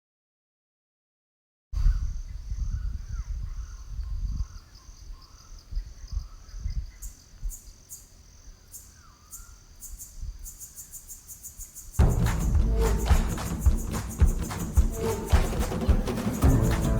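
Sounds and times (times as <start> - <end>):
wind rumbling on microphone: 1.8 - 7.6
high drone of insects: 3.5 - 16.9
pulsing chirps: 11.4 - 16.9.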